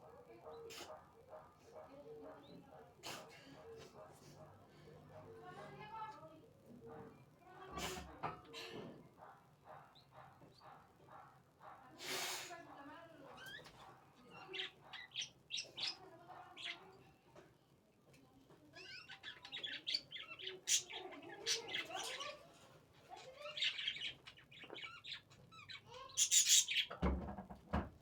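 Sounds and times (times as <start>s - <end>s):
birds chirping: 13.2s - 17.0s, 18.7s - 22.6s, 23.2s - 27.0s.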